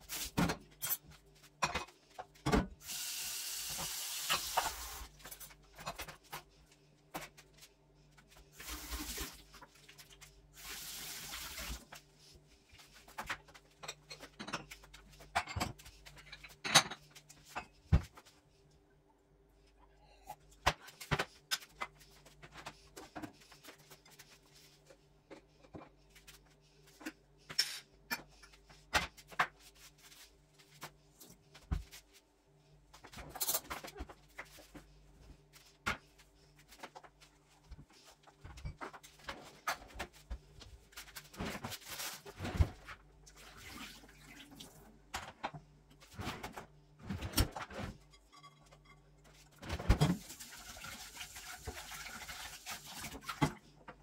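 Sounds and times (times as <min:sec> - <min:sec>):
objects knocking and clattering: 0:13.1 - 0:18.3.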